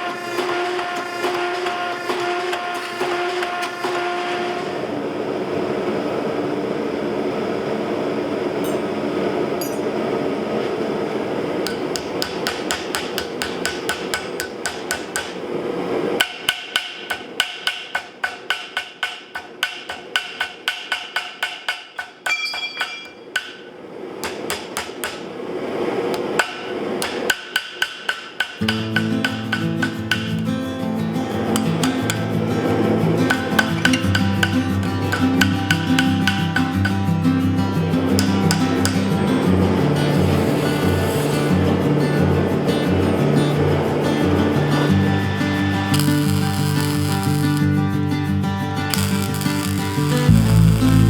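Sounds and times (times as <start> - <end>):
hammer striking iron on anvil: 9.6 - 10.0, 11.6 - 15.4, 16.2 - 25.3, 26.1 - 30.4, 31.6 - 32.3, 33.3 - 37.1, 38.1 - 39.2, 45.9 - 47.7, 48.9 - 51.0
guitar: 28.6 - 51.0
background music: 28.7 - 51.0
steady noise: 29.1 - 51.0.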